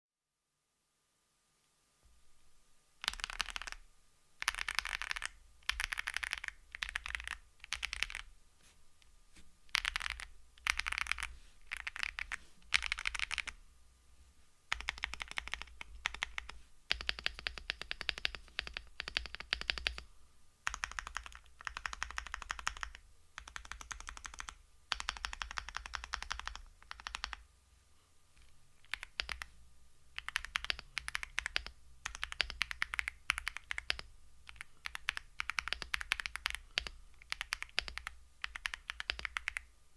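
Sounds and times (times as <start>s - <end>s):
typing on mechanical keyboard: 3.0s - 3.8s, 4.4s - 8.3s, 9.7s - 13.6s, 14.7s - 20.0s, 20.6s - 27.4s, 28.4s - 29.5s, 30.2s - 39.7s.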